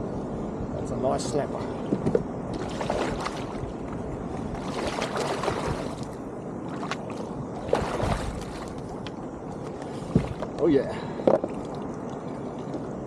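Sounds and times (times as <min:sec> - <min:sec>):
water splashing around kayak: 0:01.5 - 0:13.0
knocks against hull: 0:01.9 - 0:02.2, 0:10.1 - 0:10.6.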